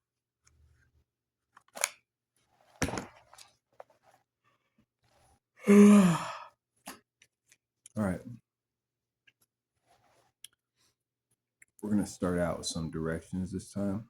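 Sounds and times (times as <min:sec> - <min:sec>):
person sighing or humming: 0:05.6 - 0:06.6.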